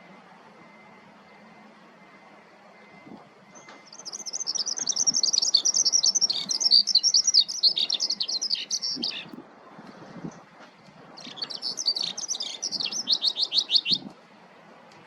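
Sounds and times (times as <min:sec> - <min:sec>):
skylark singing: 0:03.6 - 0:09.3, 0:11.2 - 0:14.1.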